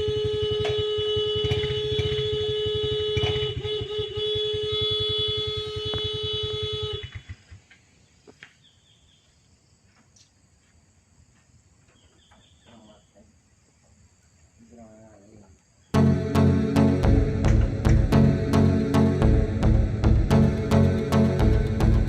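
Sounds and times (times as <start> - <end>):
motorcycle horn blast: 0.0 - 7.4
faint chirps: 11.9 - 16.0
fast low throb: 16.0 - 22.0.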